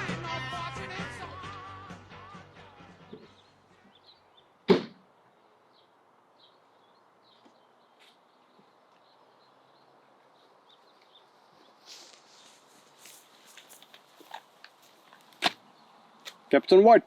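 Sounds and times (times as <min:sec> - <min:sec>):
loud thump: 0:04.7 - 0:05.0
brief rustle: 0:11.4 - 0:15.6.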